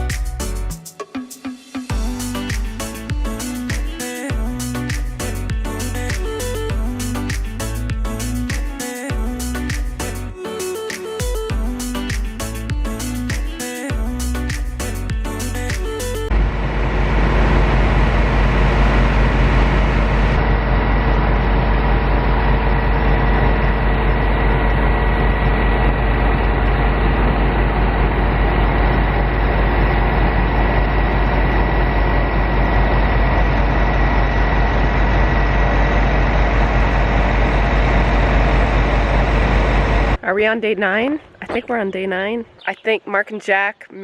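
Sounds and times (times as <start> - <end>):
farm machinery engine rumbling: 16.3 - 40.2
thin steady whine: 16.3 - 40.2.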